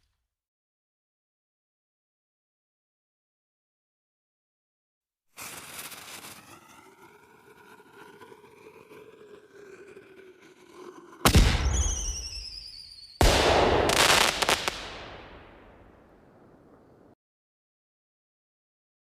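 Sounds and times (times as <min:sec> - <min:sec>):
weapon blast with whistling tones: 0:11.2 - 0:17.2.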